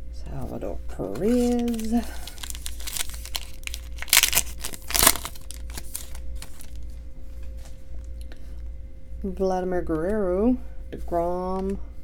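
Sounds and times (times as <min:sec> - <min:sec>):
cards being flipped through: 0:01.2 - 0:06.9.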